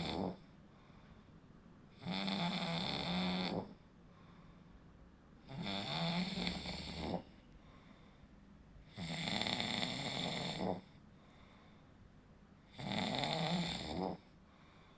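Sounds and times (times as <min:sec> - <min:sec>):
person snoring: 0:00.0 - 0:00.4, 0:02.0 - 0:03.8, 0:05.5 - 0:07.3, 0:08.9 - 0:10.8, 0:12.8 - 0:14.2.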